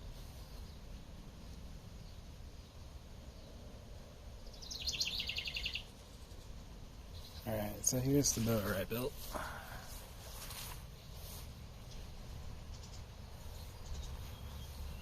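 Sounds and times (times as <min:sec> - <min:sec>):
low outdoor rumble: 0:00.0 - 0:15.0
bird trill: 0:04.4 - 0:07.5, 0:12.7 - 0:15.0.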